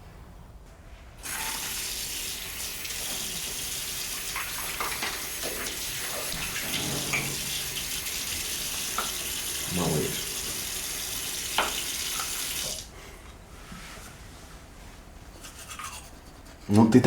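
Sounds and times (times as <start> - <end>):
tap running into sink: 2.8 - 12.8.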